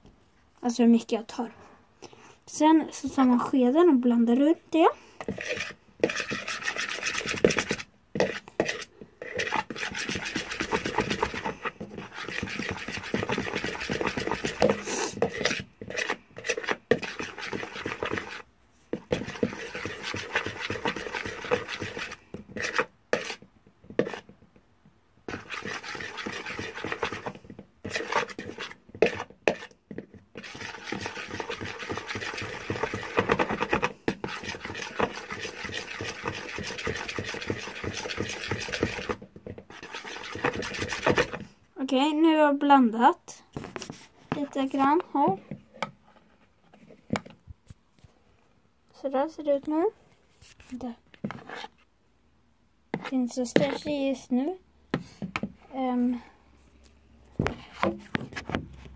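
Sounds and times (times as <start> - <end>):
spoon scraping in bowl: 5.2 - 23.4, 24.0 - 24.3, 25.3 - 29.7, 30.3 - 41.4, 50.4 - 51.8, 52.9 - 53.9.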